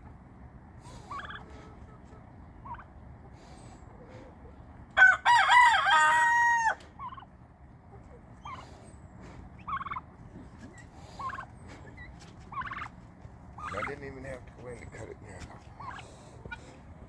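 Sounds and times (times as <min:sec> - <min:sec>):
fowl calling: 0:00.8 - 0:07.3, 0:08.0 - 0:14.1, 0:15.5 - 0:16.8
rooster crowing: 0:05.0 - 0:06.9.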